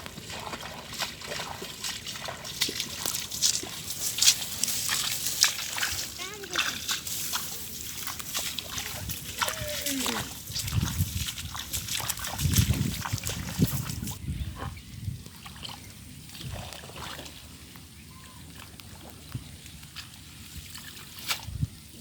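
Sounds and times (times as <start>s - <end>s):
water trickling and dripping: 0.0s - 14.2s
water splashing and sloshing: 0.0s - 21.8s.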